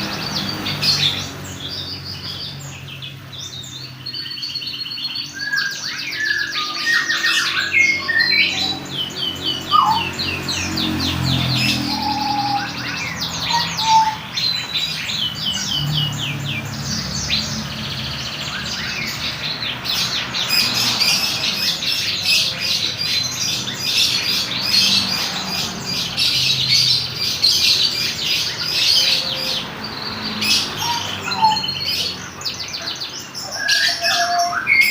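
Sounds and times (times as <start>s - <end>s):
canary singing trills: 0.0s - 34.9s.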